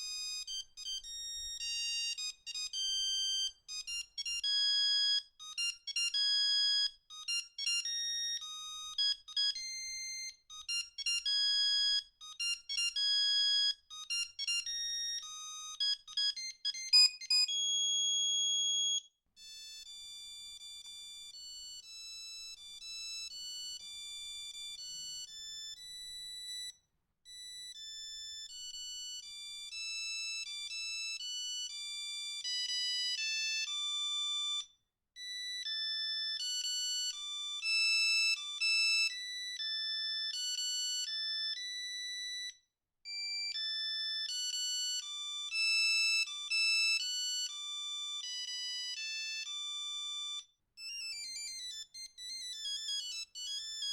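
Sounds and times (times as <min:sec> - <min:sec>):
monophonic phone ringtone: 0:14.4 - 0:18.0, 0:43.2 - 0:53.9.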